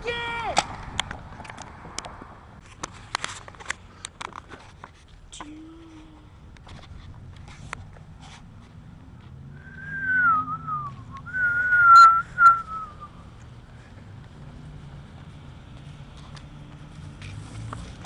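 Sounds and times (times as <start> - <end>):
person whistling falling notes: 9.6 - 13.1.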